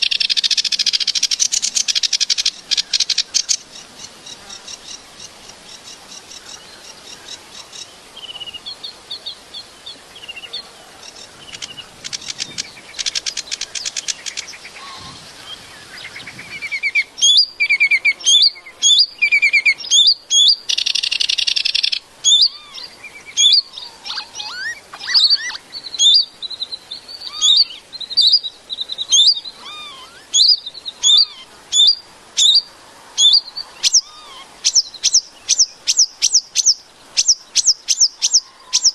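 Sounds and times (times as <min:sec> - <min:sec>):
small bird chirping and trilling: 0:16.0 - 0:38.9.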